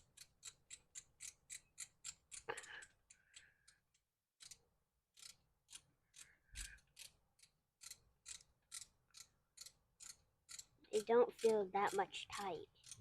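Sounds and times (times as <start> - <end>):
ratchet clicking rapidly: 0.0 - 2.5, 5.2 - 11.6, 12.8 - 13.0.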